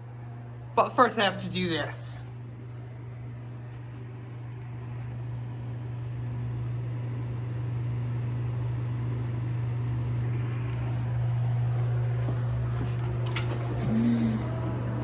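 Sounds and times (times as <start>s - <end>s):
low droning hum: 0.0s - 15.0s.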